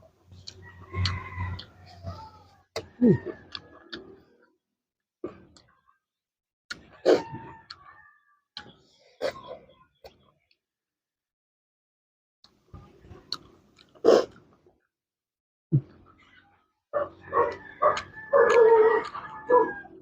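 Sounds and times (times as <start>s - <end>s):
person chewing: 0.4s - 4.1s, 13.3s - 14.5s, 17.8s - 19.3s
dog barking: 17.0s - 19.8s.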